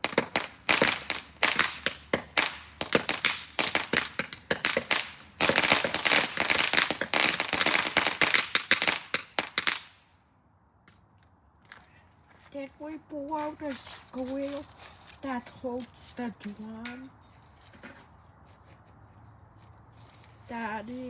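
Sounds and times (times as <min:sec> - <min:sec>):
firework crackling hiss: 0:00.0 - 0:10.0
firework pops and cracks: 0:00.0 - 0:10.0.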